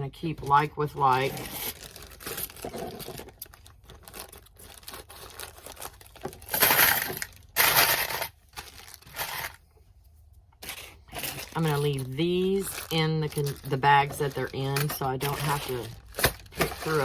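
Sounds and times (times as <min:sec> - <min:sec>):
plastic bags crinkling: 0:00.4 - 0:09.6, 0:10.6 - 0:17.0.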